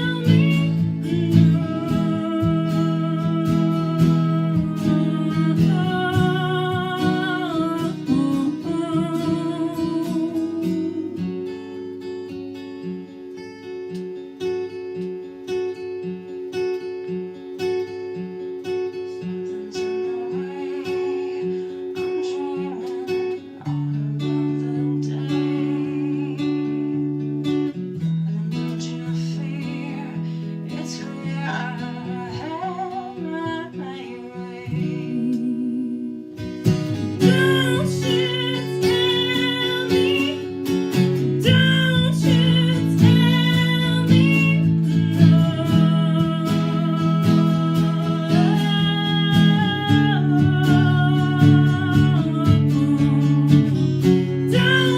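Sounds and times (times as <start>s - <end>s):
strummed acoustic guitar: 0.0s - 54.9s.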